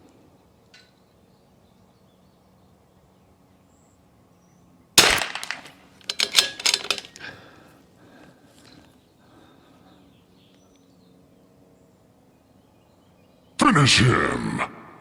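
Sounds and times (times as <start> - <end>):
rifle shot: 5.0 - 7.0
rifle bolt metallic clicks: 5.0 - 7.3.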